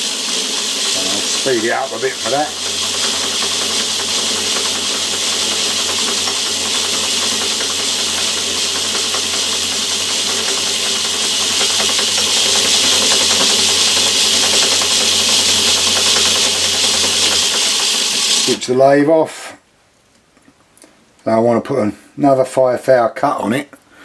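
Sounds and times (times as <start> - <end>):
lathe whirring with hiss: 0.0 - 18.9.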